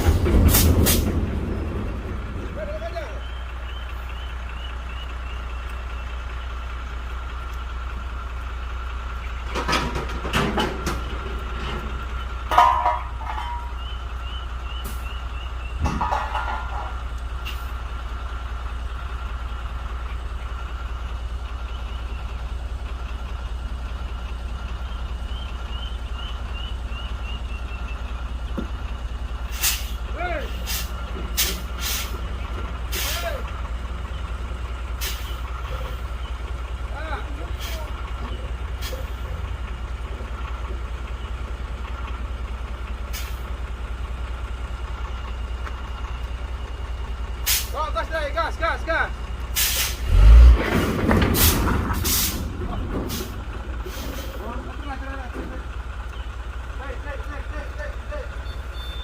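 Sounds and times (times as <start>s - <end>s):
diesel truck engine running: 0.0s - 59.0s
air brake hiss: 29.5s - 30.0s, 30.6s - 32.2s, 35.0s - 35.4s, 47.4s - 47.8s, 49.6s - 50.0s, 52.0s - 52.5s, 53.1s - 54.4s
faint high chirps: 58.4s - 59.0s.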